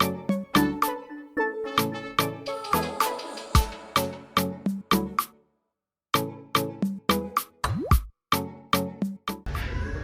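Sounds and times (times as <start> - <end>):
music with steady drum beat: 1.8 - 5.3.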